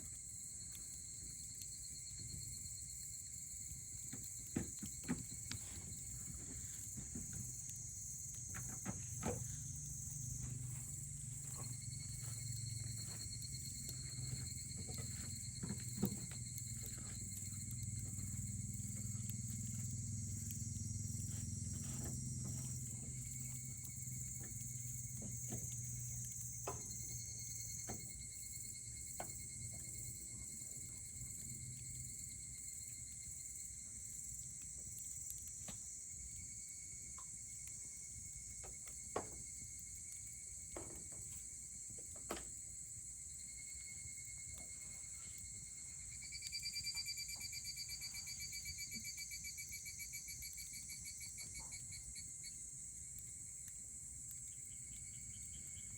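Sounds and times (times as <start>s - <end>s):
pulsing insect trill: 0.0s - 55.9s
campfire crackling and popping: 0.1s - 27.2s
high insect trilling: 5.0s - 30.3s, 45.4s - 52.3s.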